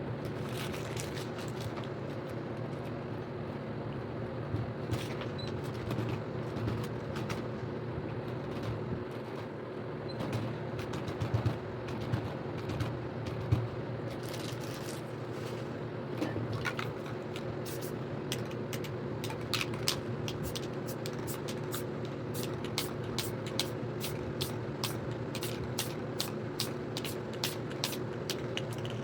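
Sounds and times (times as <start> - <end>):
spray paint can hissing: 17.7 - 18.0, 20.3 - 28.0.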